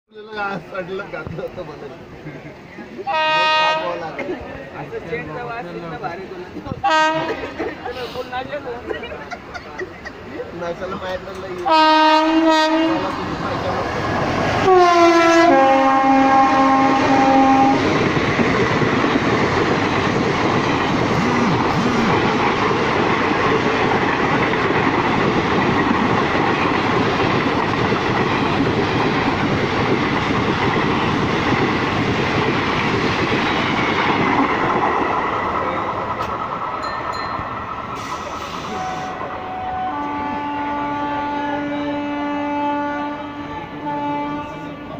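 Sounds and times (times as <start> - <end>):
train running on rails: 0.1 - 44.9
locomotive dual-tone horn: 3.1 - 4.0, 6.8 - 7.4, 11.7 - 13.1, 14.6 - 17.8, 38.7 - 44.9.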